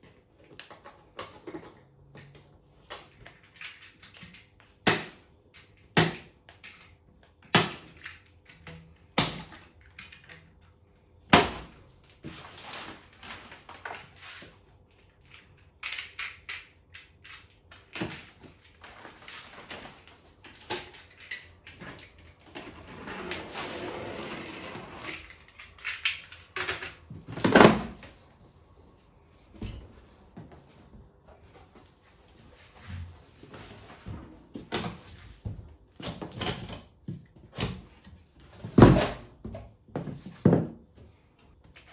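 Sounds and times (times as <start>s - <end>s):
packaging rustling and scraping: 12.2s - 14.9s, 18.0s - 25.9s.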